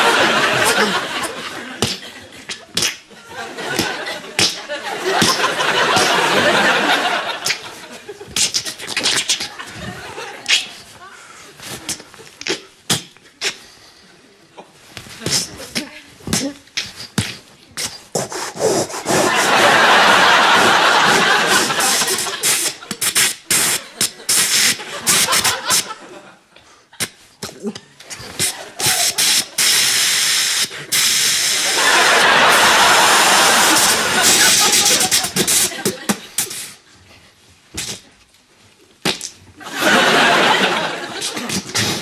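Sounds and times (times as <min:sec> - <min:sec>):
audience laughing: 0:00.0 - 0:08.4, 0:09.4 - 0:10.9, 0:19.0 - 0:23.0, 0:23.8 - 0:26.5, 0:28.3 - 0:29.6, 0:31.5 - 0:36.4, 0:39.6 - 0:42.0
short sharp mouth hisses: 0:08.4 - 0:09.6, 0:11.7 - 0:13.9, 0:15.2 - 0:19.4, 0:21.9 - 0:25.9, 0:27.0 - 0:31.7, 0:33.7 - 0:36.8, 0:37.7 - 0:38.1, 0:41.2 - 0:42.0
short sharp clicks and hisses: 0:28.1 - 0:31.7.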